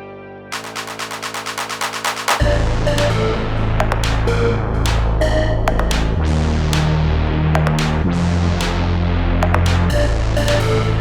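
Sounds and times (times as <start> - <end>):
fast percussion roll: 0.6 - 3.2.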